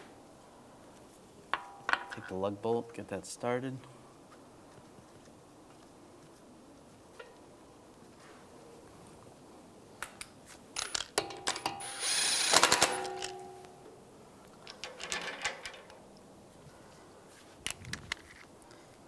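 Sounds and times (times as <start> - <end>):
metallic ring: 1.5 - 2.2, 10.8 - 14.0
metal bolts clicking and clinking: 1.5 - 2.4, 10.8 - 16.3
power tool burst: 11.4 - 13.4.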